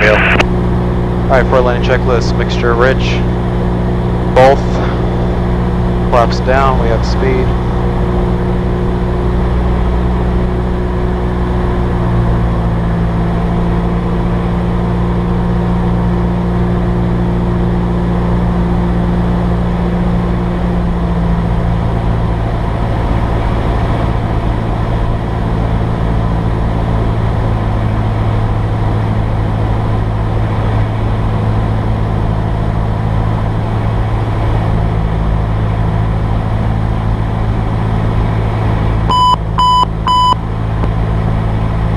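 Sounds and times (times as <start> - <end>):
aircraft engine and propeller droning: 0.0 - 41.9.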